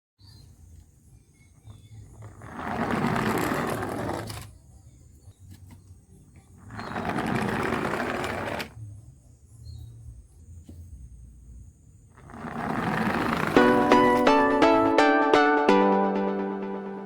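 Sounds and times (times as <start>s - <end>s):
toy cars rolling down ramp: 1.8s - 4.7s, 6.5s - 8.8s, 12.1s - 14.0s.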